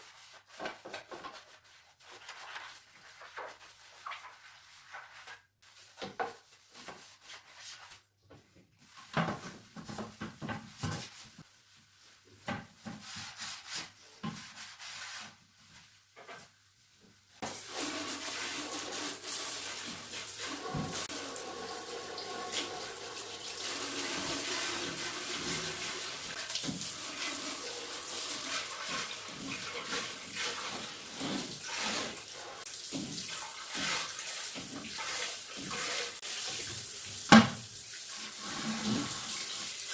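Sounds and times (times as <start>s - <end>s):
water running into a sink: 17.4s - 39.9s.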